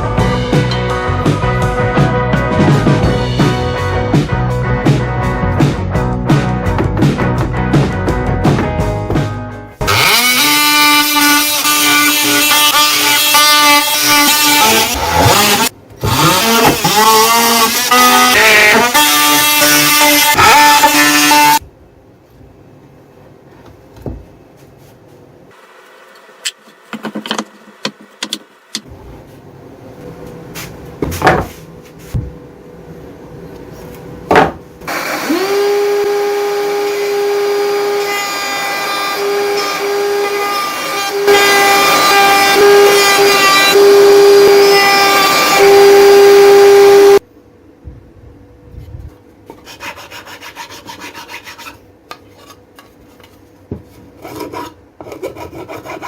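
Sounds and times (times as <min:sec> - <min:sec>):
power tool motor whining: 0:09.8 - 0:21.6, 0:34.9 - 0:47.2
sharp knocks on wood: 0:31.0 - 0:31.5, 0:34.3 - 0:34.6
scraping rasping sound: 0:49.5 - 0:56.0.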